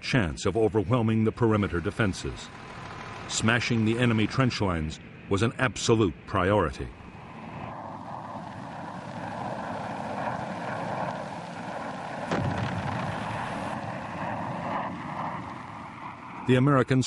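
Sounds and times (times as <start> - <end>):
aircraft engine drone: 0.0 - 17.0
single blast: 12.3 - 13.8.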